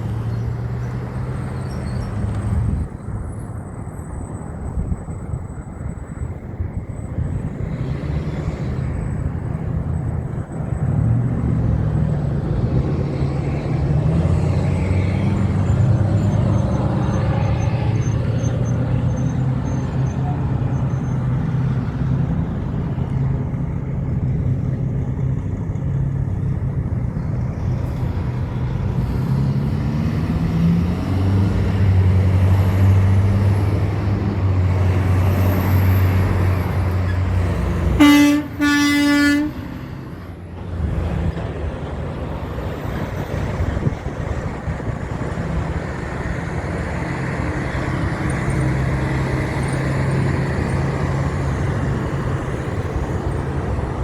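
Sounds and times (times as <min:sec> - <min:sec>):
road traffic noise: 0:00.0 - 0:54.0
truck diesel engine passing: 0:00.0 - 0:54.0
truck horn blasts: 0:37.1 - 0:40.3.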